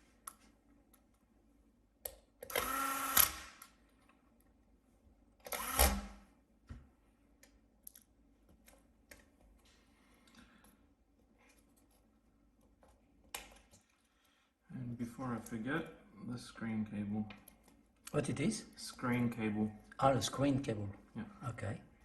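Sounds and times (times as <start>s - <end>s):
electric screwdriver motor: 2.4s - 3.5s, 5.5s - 6.1s
light clicks of small parts: 7.4s - 10.8s.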